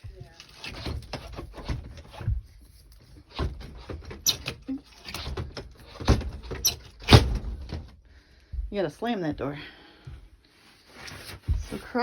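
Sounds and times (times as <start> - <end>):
door knocks and clunks: 5.2 - 8.0.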